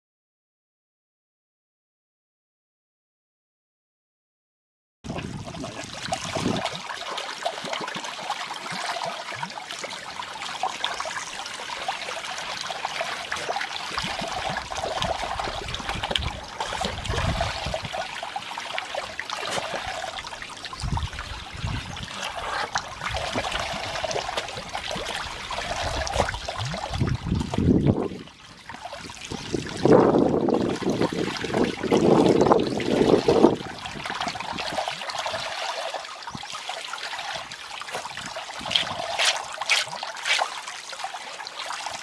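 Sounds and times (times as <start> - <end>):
water spraying from hose: 5.6 - 27.6, 34.2 - 42.0.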